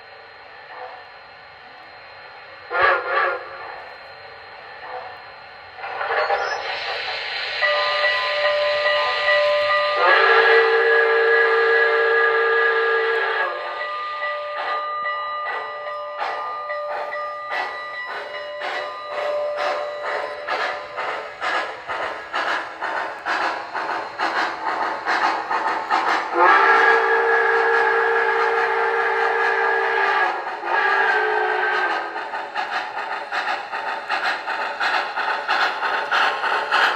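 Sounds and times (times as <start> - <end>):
steam chuffs: 2.3 - 36.9
train chime whistle: 7.6 - 21.1, 26.2 - 32.0.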